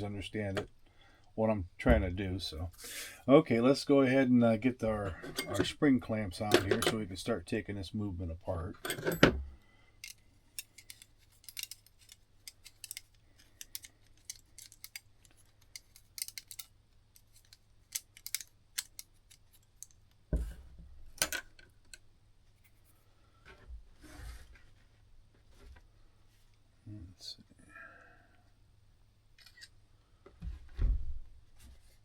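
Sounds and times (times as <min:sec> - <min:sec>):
metallic clicks and snips: 0:10.0 - 0:20.1.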